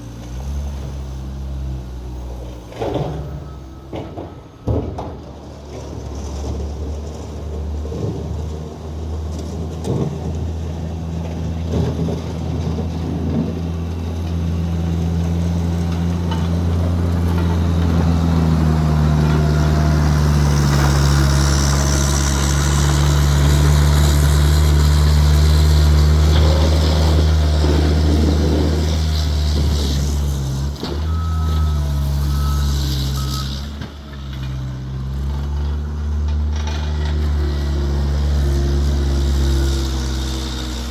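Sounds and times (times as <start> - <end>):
skid steer engine running: 0.0 - 40.9
blade scraping snow on pavement: 14.6 - 30.8, 36.8 - 40.9
reverse alarm beeping: 31.1 - 33.6.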